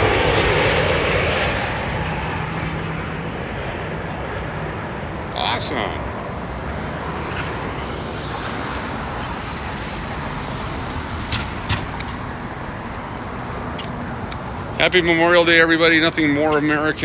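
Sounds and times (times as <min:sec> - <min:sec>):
jet engines rumbling: 0:00.0 - 0:17.0.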